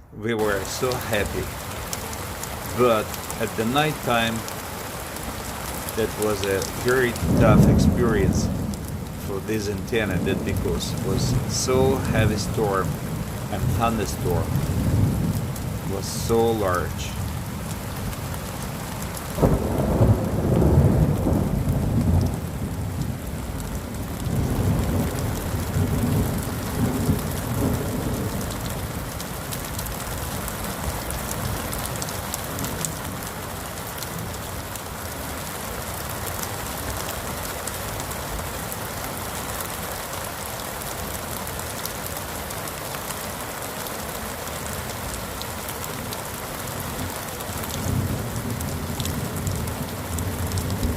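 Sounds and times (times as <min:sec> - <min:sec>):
heavy rain falling: 0:00.0 - 0:50.9
thunder crack and rumble: 0:06.1 - 0:16.3, 0:19.2 - 0:33.2, 0:47.6 - 0:50.9.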